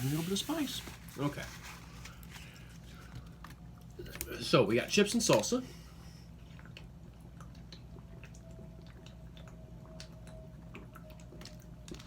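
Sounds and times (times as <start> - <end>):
low room hum: 0.0 - 12.0
chewing crunchy chips: 6.4 - 12.0.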